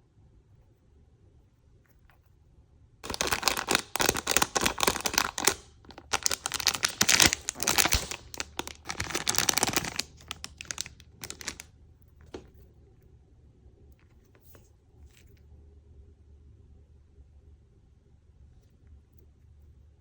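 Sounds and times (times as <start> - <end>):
packaging crackling and ripping: 3.0 - 11.6.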